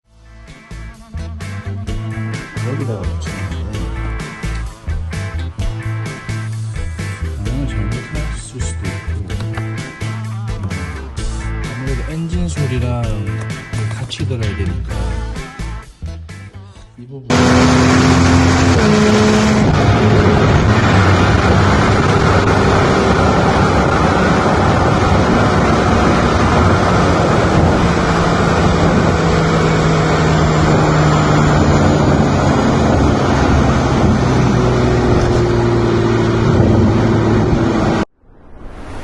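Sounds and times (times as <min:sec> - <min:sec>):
car exhaust note: 0:17.3 - 0:38.1
wind and road noise: 0:17.3 - 0:39.0.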